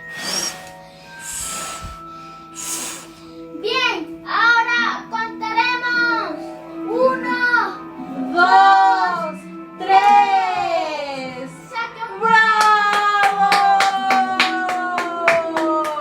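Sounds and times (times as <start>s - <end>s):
background music: 0.0s - 16.0s
hands clapping: 12.6s - 16.0s.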